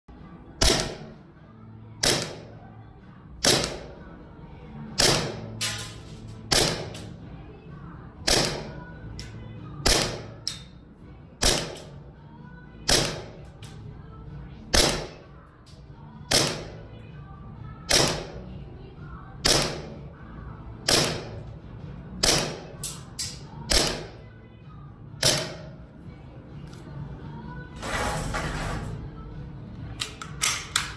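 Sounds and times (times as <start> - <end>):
airsoft pistol shots: 0.6 - 1.1, 2.0 - 2.5, 3.4 - 3.9, 5.0 - 5.8, 6.5 - 7.0, 8.3 - 8.7, 9.8 - 10.4, 11.4 - 11.9, 12.9 - 13.4, 14.7 - 15.2, 16.3 - 16.7, 17.9 - 18.4, 19.4 - 20.0, 20.9 - 21.4, 22.2 - 22.7, 23.7 - 24.1.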